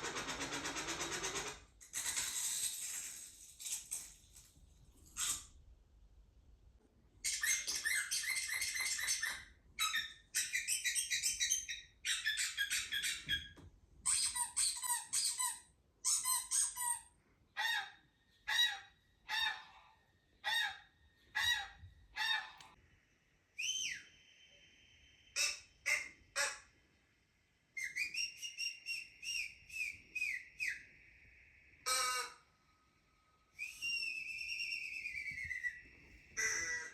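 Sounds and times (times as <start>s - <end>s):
held whistled bird notes: 23.5s - 25.9s, 27.7s - 32.5s, 33.3s - 36.9s.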